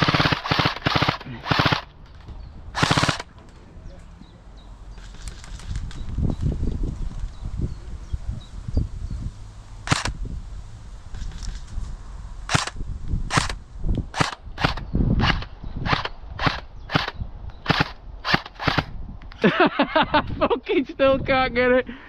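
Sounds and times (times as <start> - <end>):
airsoft gun shots: 0.0 - 1.9, 2.8 - 3.3, 9.9 - 10.2, 12.5 - 18.9.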